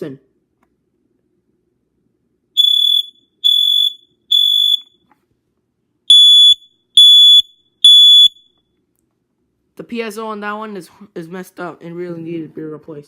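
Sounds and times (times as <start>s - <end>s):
person talking: 0.0s - 0.3s, 9.8s - 13.0s
smoke alarm high-pitched beeps: 2.6s - 5.0s, 6.1s - 8.7s.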